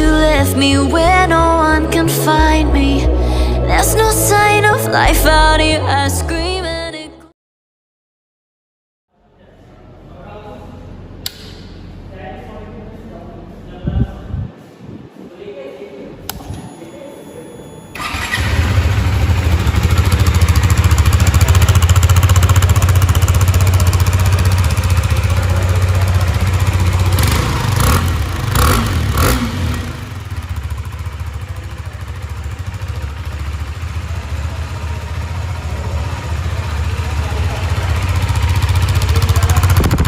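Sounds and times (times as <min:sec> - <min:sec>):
engine throttle revs: 0:18.0 - 0:40.0
motorcycle engine idling: 0:18.0 - 0:40.0.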